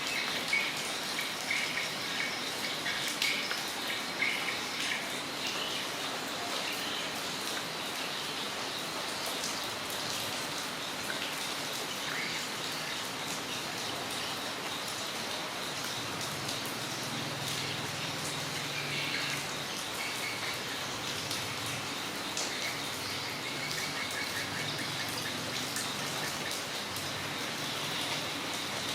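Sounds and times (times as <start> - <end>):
raindrops ticking: 0.0 - 5.8, 8.8 - 28.9
rain falling: 0.0 - 28.9.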